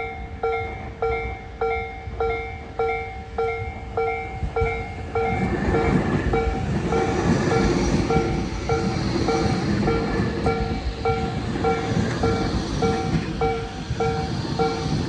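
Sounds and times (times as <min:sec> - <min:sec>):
electric train running noise: 0:03.7 - 0:15.0.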